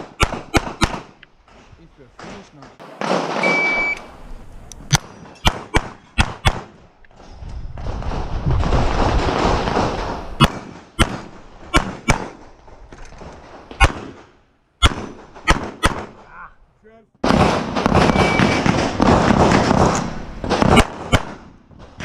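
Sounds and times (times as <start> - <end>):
pistol shots: 0.0 - 1.2, 4.9 - 6.8, 9.2 - 12.4, 13.7 - 16.2, 17.2 - 21.6
shot timer beep: 3.4 - 4.0, 18.1 - 18.6.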